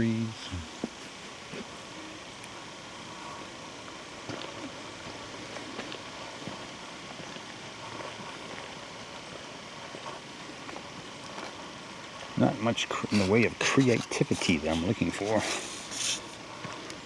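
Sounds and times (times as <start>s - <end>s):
small crackles: 3.2s - 17.0s
footsteps crunching on leaves: 12.9s - 16.4s.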